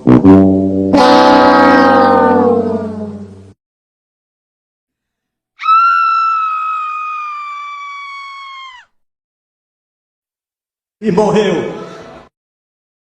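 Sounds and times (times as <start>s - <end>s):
high-pitched scream: 1.0s - 3.3s, 5.6s - 9.0s.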